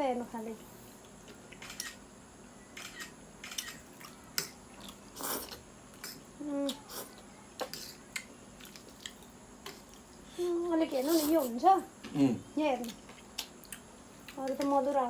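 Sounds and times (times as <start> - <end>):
person chewing noodles: 3.9 - 10.2, 12.8 - 14.4.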